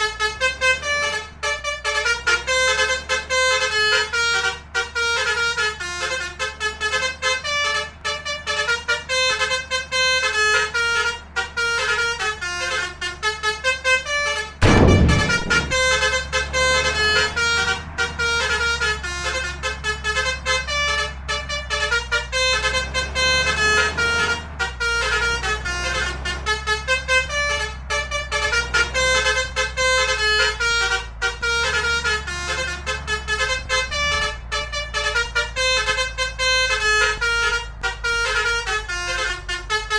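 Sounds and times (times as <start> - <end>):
multi-tone bus horns playing notes: 0.0 - 15.1, 17.6 - 39.9
loud deep horn blast: 14.6 - 16.2.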